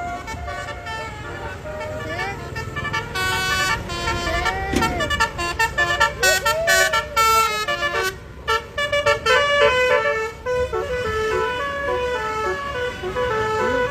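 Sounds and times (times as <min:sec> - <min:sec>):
bus multi-tone air horn melody: 0:00.0 - 0:13.9.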